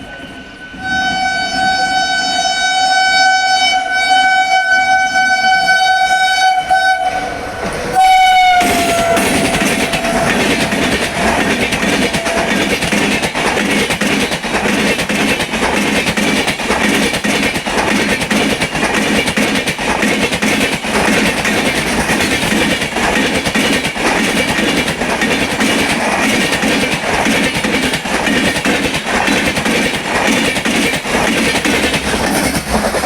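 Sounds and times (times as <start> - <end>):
train wheels clattering over rails: 7.5 - 33.0.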